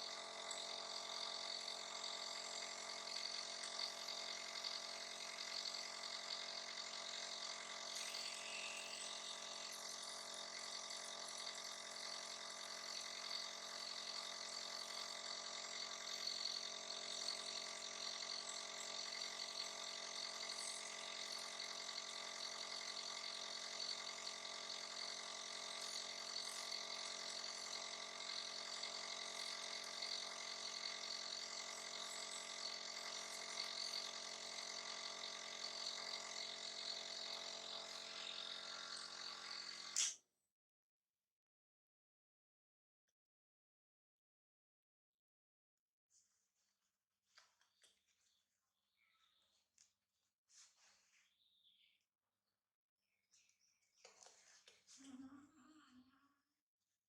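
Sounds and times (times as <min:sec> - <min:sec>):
small motor humming: 0:00.0 - 0:40.2, 0:53.4 - 0:56.3.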